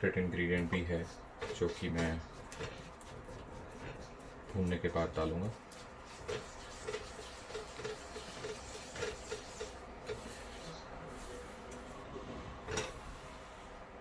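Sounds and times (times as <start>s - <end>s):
spatula scraping a pan: 1.4s - 4.6s, 5.5s - 10.8s, 12.6s - 13.3s.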